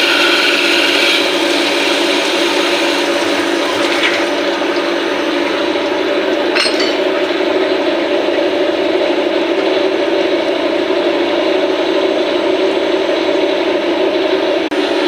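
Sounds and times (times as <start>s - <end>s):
lathe machine hum: 0.0s - 15.0s
metallic clink: 6.5s - 7.2s.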